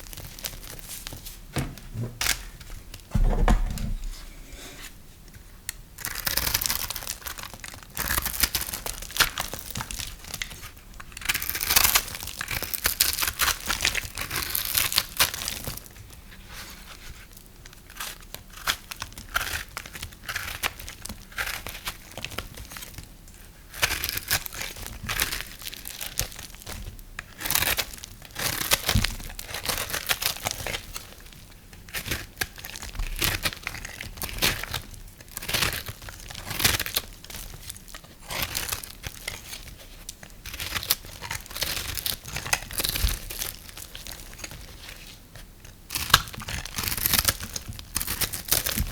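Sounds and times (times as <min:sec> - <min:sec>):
knife cutting brittle soap: 0:17.7 - 0:48.9.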